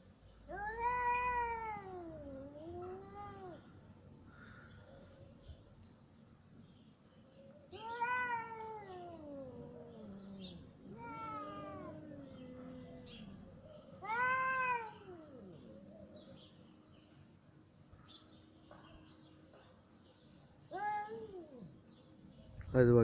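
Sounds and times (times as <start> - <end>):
cats meowing: 0.5 - 3.8, 7.7 - 16.4, 20.7 - 21.9.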